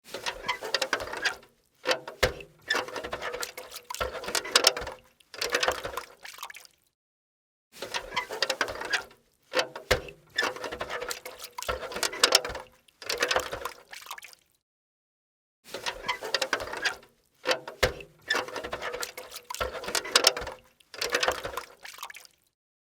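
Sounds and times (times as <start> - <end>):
steel bucket clanking and rattling: 0.1 - 6.2, 7.8 - 13.8, 15.7 - 21.8.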